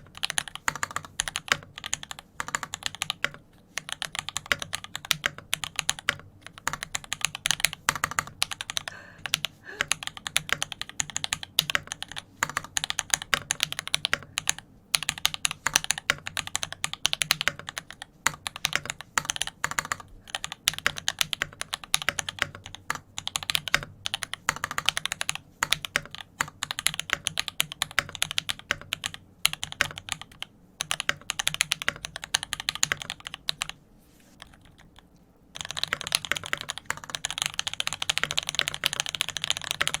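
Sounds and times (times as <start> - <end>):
mechanical keyboard typing: 0.0 - 33.8, 34.4 - 40.0.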